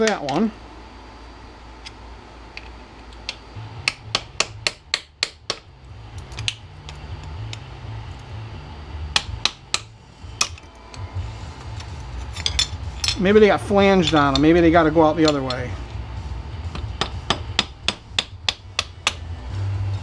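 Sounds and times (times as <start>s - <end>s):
low hum: 0.5s - 20.0s
taps on metal housing: 16.7s - 19.3s.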